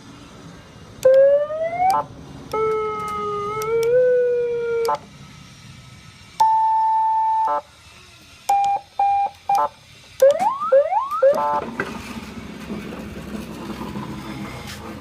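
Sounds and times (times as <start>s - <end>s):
electronic siren tones: 1.0s - 5.0s, 6.4s - 7.7s, 8.5s - 11.6s
short siren beeps: 8.5s - 11.6s.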